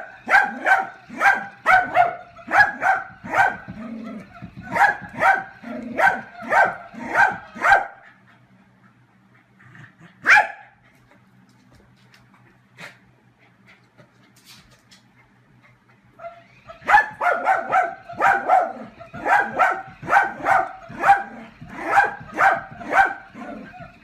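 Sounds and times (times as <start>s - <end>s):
dog barking high-pitched: 0.2s - 3.7s, 4.7s - 8.0s, 10.2s - 10.7s, 16.2s - 23.8s.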